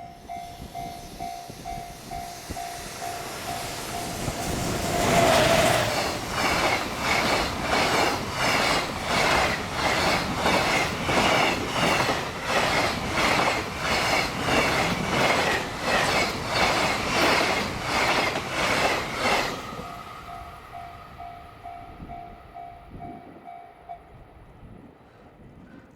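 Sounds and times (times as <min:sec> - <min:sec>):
train wheels clattering on rail joints: 0:00.2 - 0:20.0.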